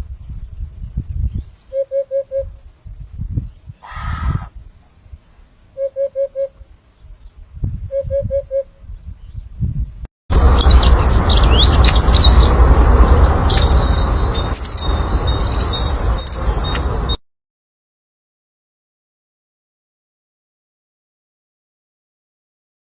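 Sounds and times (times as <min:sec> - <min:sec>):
steady low rumble: 0:00.0 - 0:01.7, 0:02.4 - 0:05.8, 0:06.6 - 0:17.1
songbirds chirping: 0:00.0 - 0:02.1, 0:03.3 - 0:07.7.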